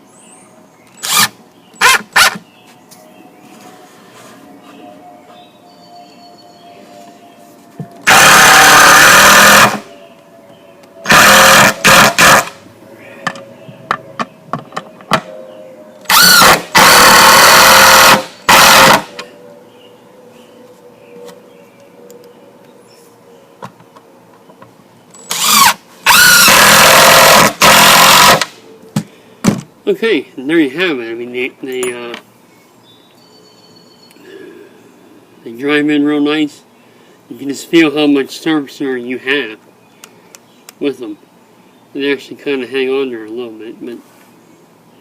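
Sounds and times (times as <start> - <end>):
power drill driving screws: 1.0 - 2.0, 8.0 - 9.8, 11.1 - 12.5, 16.1 - 19.0, 25.3 - 28.5.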